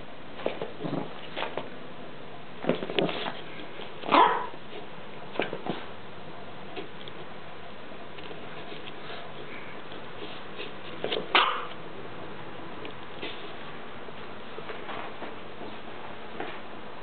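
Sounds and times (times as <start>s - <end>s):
small dog yipping and barking: 4.1s - 4.6s, 11.3s - 11.7s.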